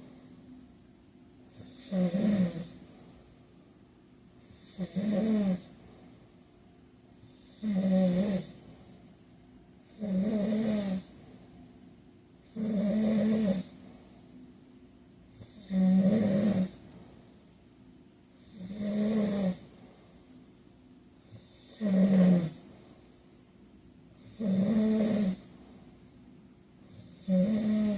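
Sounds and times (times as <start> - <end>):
man snoring: 1.5 - 2.8, 4.4 - 5.7, 7.2 - 8.6, 9.8 - 11.1, 12.5 - 13.8, 15.4 - 16.8, 18.4 - 19.7, 21.3 - 22.6, 24.2 - 25.5, 26.8 - 27.9.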